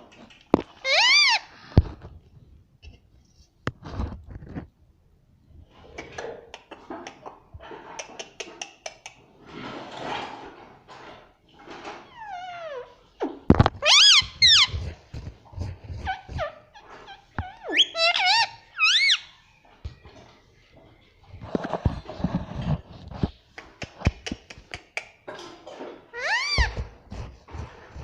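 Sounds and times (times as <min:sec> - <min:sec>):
parrot whistled calls: 0:17.7 - 0:19.3.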